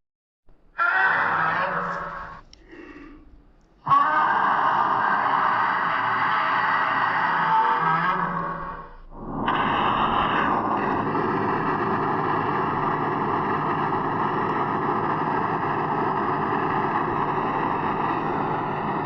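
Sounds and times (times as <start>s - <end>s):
monster roar rushing rumble: 0.8s - 3.2s, 3.8s - 19.0s.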